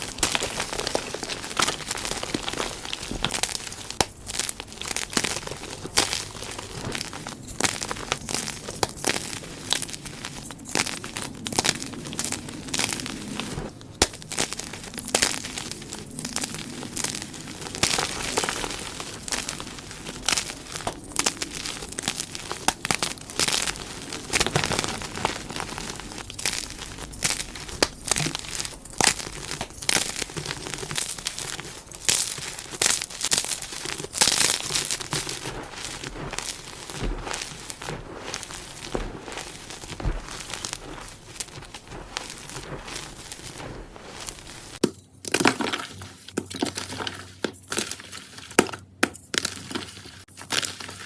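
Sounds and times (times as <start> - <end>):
chalk being crushed by hand: 0.0 - 44.8.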